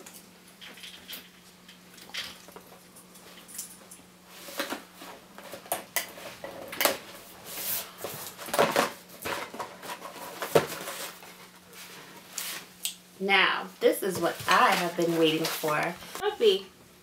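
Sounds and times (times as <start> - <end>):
packaging rustling and crinkling: 4.4 - 12.7.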